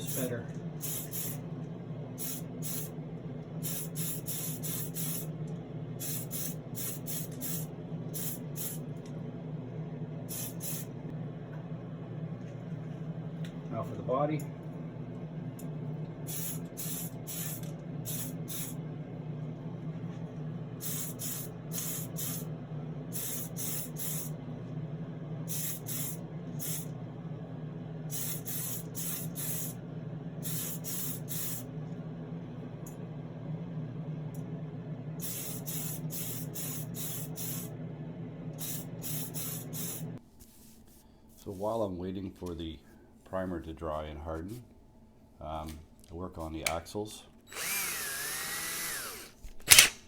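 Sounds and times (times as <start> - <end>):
steady low hum: 0.0 - 50.0
aerosol can spraying in bursts: 0.8 - 1.4, 2.2 - 2.9, 3.6 - 5.3, 6.0 - 8.8, 10.3 - 10.9, 16.3 - 18.7, 20.8 - 22.4, 23.2 - 24.3, 25.5 - 26.9, 28.1 - 29.7, 30.4 - 31.6, 35.2 - 37.7, 38.6 - 40.1.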